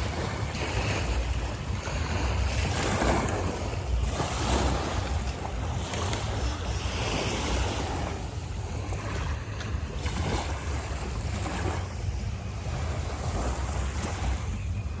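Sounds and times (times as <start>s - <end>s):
sea waves washing ashore: 0.0s - 15.0s
wind buffeting microphone: 0.0s - 15.0s.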